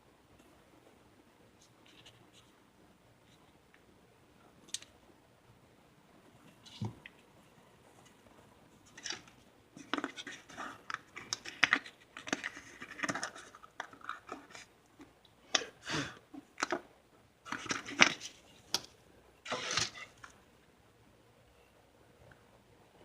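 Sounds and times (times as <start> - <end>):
plastic parts clicking and scraping: 8.9 - 14.7, 17.5 - 18.8, 19.5 - 20.4.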